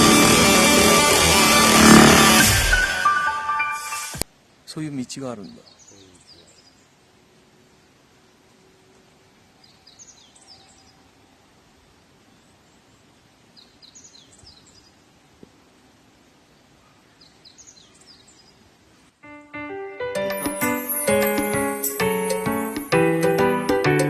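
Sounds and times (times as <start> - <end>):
outdoor background hiss: 0.0 - 24.0
small bird singing: 5.4 - 7.1, 8.9 - 11.1, 12.3 - 15.0, 16.6 - 18.7.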